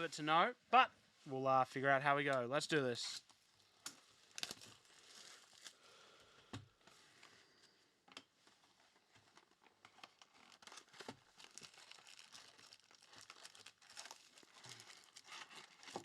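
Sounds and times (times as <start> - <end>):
plastic wrap crinkling and tearing: 3.3 - 5.8, 9.1 - 16.0.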